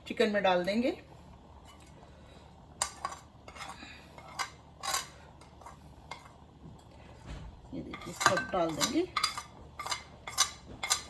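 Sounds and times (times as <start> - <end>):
spoon clinking against dishes: 7.9 - 11.0.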